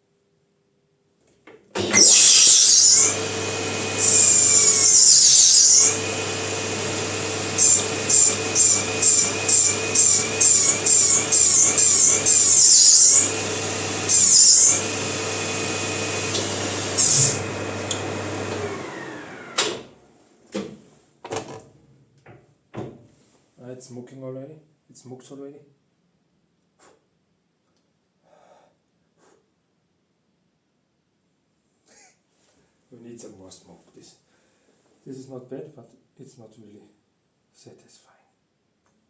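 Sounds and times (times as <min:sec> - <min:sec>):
lathe whining: 0:01.8 - 0:20.0.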